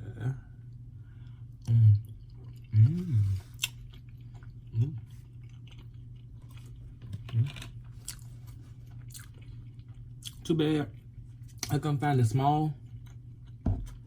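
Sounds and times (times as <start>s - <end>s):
man chewing food: 0.7s - 11.7s, 12.8s - 14.0s
man humming closed-mouth: 2.7s - 3.4s.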